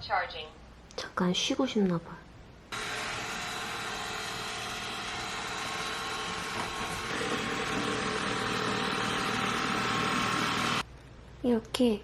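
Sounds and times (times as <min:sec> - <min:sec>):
robot vacuum motor whirring: 0:02.7 - 0:10.8.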